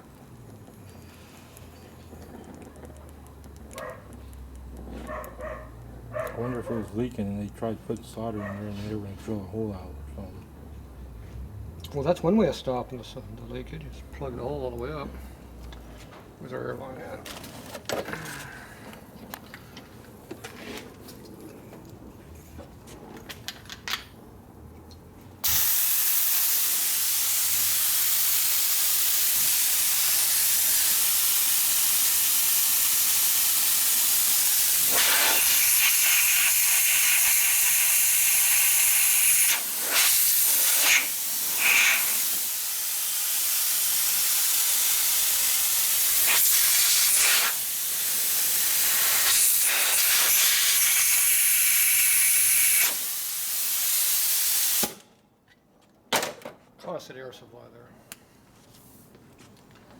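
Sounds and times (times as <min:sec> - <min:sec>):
compressed air hissing: 0:25.4 - 0:55.0.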